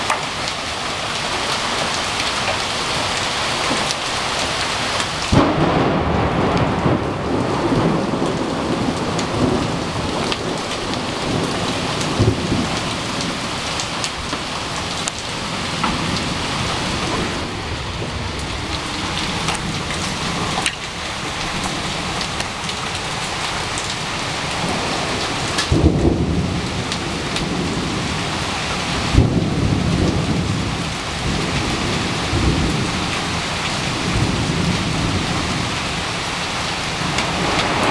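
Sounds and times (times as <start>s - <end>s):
hailstones cracking: 0.0s - 37.9s
heavy rain hissing: 0.0s - 37.9s.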